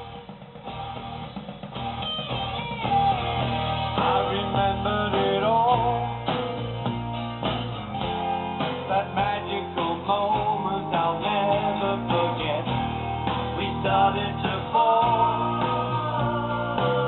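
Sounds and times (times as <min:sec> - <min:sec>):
guitar music: 0:00.0 - 0:17.0.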